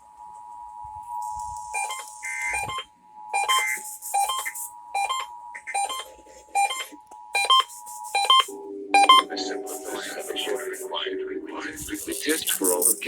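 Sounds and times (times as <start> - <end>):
electronic alert beeps: 1.7 - 10.8
two-tone attention signal: 1.7 - 10.8.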